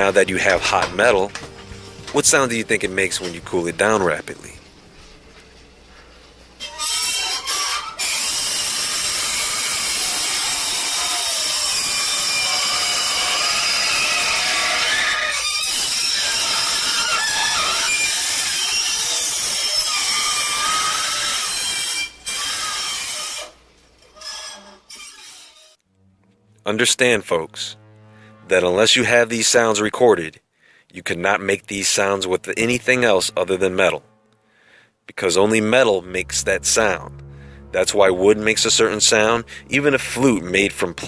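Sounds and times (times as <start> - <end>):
squealing tones: 6.5 - 25.7
hot metal hissing in water: 6.7 - 23.6.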